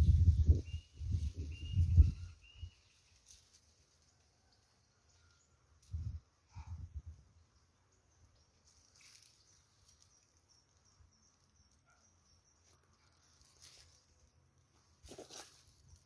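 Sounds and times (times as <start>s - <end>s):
soft rustles: 12.6s - 14.2s, 14.8s - 16.0s.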